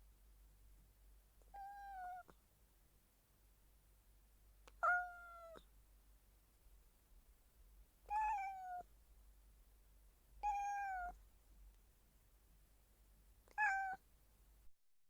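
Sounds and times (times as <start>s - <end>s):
cat meowing softly: 1.5s - 2.4s, 4.7s - 5.7s, 8.1s - 8.9s, 10.4s - 11.2s, 13.5s - 14.1s.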